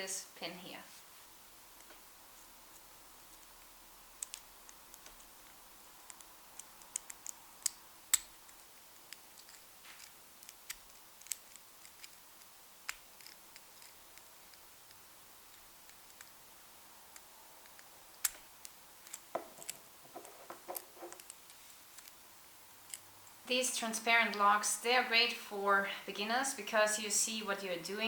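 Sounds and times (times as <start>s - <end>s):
lock pick clicking and scraping: 6.0s - 12.2s, 12.8s - 16.3s, 17.1s - 22.2s.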